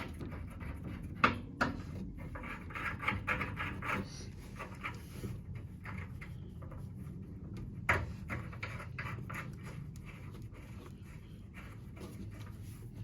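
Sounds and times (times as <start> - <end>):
light clicks and rubs: 0.0 - 13.0.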